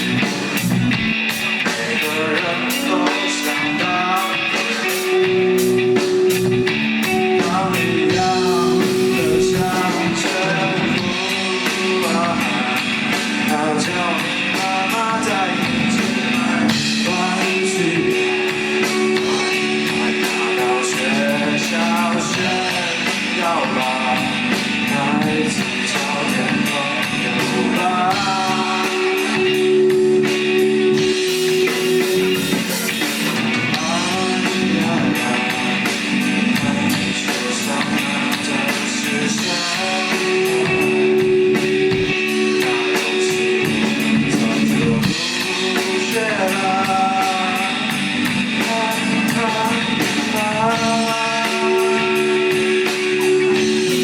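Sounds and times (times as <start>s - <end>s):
drum kit: 0.0s - 54.0s
electric guitars: 0.0s - 54.0s
lead vocal singing: 0.0s - 54.0s.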